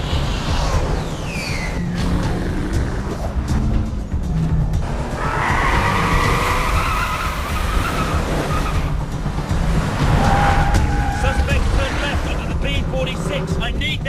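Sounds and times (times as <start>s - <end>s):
car tyres squealing: 0.0s - 2.2s, 4.9s - 9.1s, 9.7s - 13.5s.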